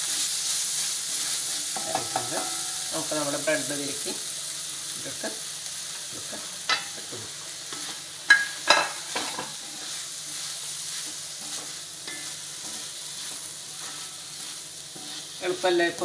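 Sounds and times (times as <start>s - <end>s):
food sizzling in oil: 0.0s - 16.0s
spatula clacking against pan: 1.7s - 2.9s, 7.7s - 9.6s, 11.0s - 15.3s.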